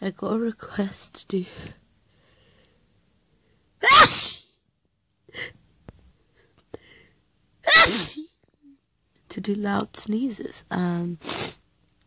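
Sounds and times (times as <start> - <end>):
person sneezing loudly: 3.8 - 4.5, 7.6 - 8.3, 11.2 - 11.6.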